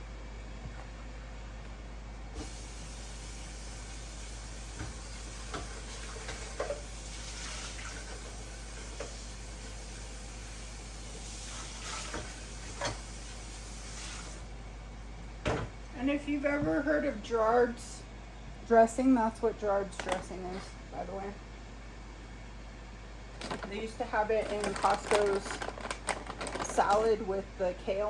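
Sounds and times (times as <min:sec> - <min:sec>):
food sizzling: 0:02.4 - 0:14.5
utensils clinking: 0:23.4 - 0:27.2.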